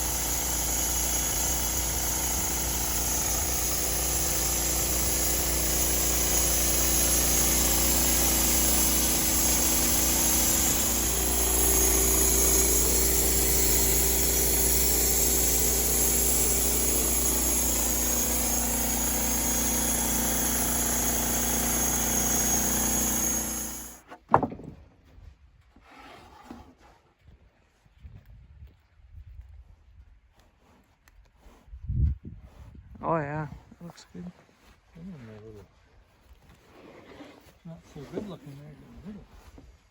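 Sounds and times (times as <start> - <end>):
saw blade cutting wood: 0.0 - 24.0
sawmill engine running: 0.0 - 24.0.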